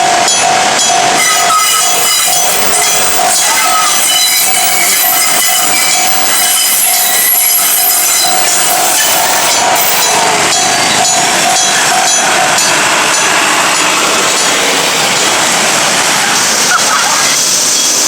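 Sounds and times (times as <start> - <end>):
electric train passing: 0.0 - 18.0
pulsing electronic alarm tone: 1.2 - 12.7.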